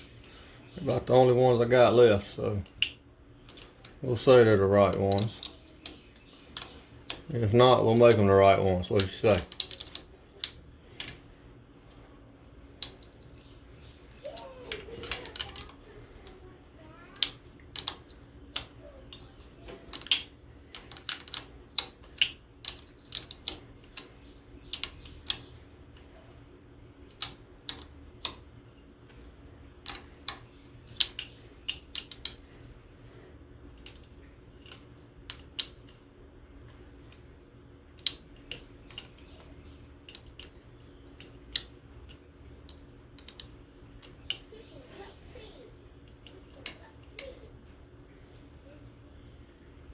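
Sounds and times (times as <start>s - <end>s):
metallic clicks of hand tools: 14.4s - 16.4s, 19.9s - 24.1s, 29.8s - 32.4s.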